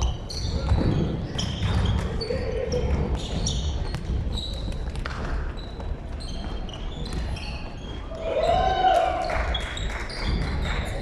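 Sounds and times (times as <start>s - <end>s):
sneakers squeaking on floor: 0.0s - 11.0s
basketball bouncing: 0.3s - 7.5s.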